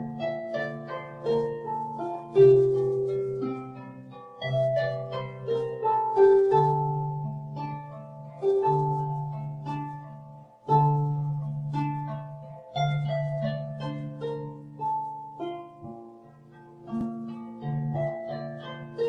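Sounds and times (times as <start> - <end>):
harp playing gentle music: 0.0 - 19.0.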